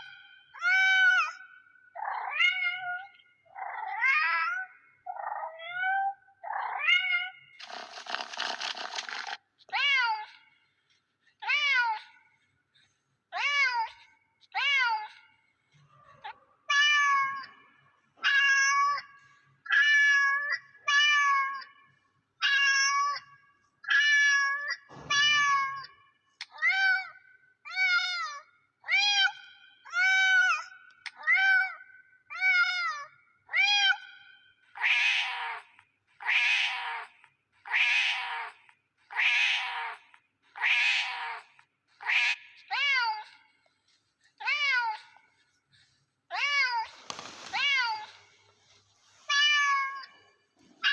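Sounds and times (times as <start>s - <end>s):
cat meowing: 18.2s - 19.1s, 22.4s - 23.3s, 34.8s - 43.3s.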